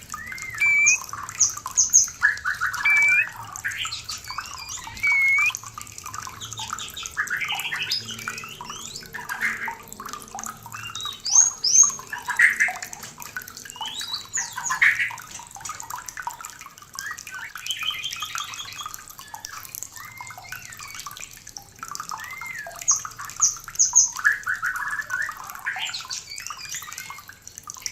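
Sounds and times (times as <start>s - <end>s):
trickling water: 0.0s - 27.9s
songbird singing whistles: 0.1s - 5.6s, 17.0s - 21.1s, 22.1s - 23.0s.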